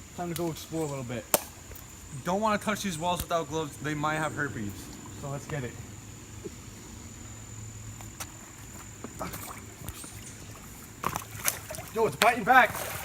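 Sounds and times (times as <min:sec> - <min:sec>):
water flowing over rocks: 0:10.9 - 0:13.0.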